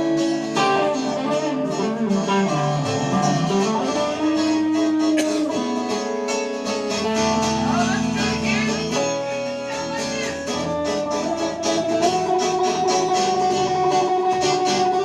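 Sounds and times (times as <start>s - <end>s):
acoustic guitar strumming: 0.0s - 15.0s
sliding lead melody notes: 0.0s - 15.0s.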